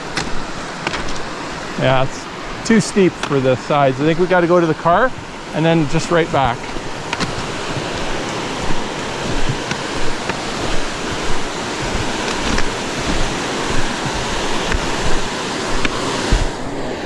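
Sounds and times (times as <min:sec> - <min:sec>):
twigs snapping: 0:00.0 - 0:01.4, 0:05.9 - 0:16.7
footsteps through brush: 0:00.0 - 0:02.1, 0:03.2 - 0:16.8
steady rushing noise: 0:00.0 - 0:17.0.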